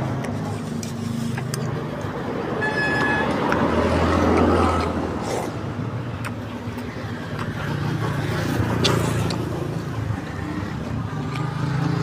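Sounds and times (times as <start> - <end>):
vehicle passing by: 0.0 - 12.0
high beep: 2.6 - 3.3.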